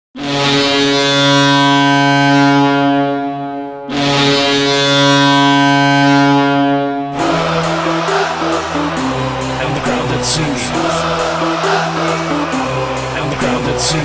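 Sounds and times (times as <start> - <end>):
arena goal horn blasts: 7.2 - 14.0.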